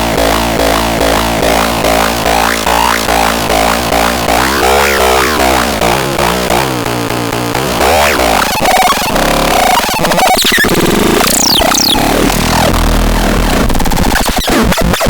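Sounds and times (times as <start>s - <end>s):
electronic music with heavy bass: 0.0s - 15.0s.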